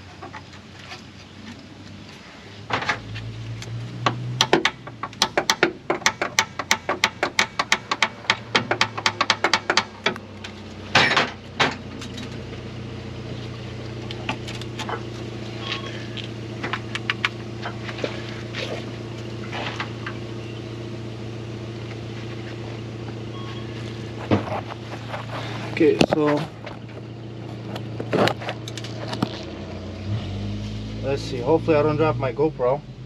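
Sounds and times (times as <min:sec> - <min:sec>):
engine hum: 0:00.0 - 0:33.0
tool clatter: 0:10.9 - 0:12.4.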